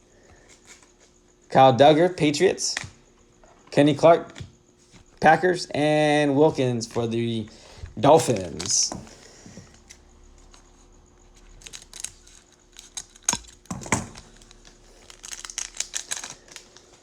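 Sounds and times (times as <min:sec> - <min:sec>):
wrapper crinkling and tearing: 0:11.5 - 0:17.0.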